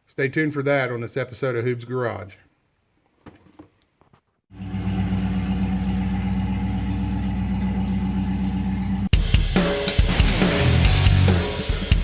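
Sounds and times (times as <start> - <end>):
car engine running: 4.5 - 9.1.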